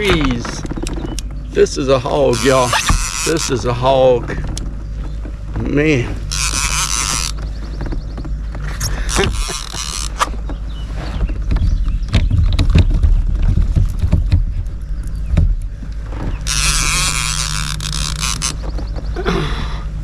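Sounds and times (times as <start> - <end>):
gear knocking in a kayak: 0.0 - 19.3.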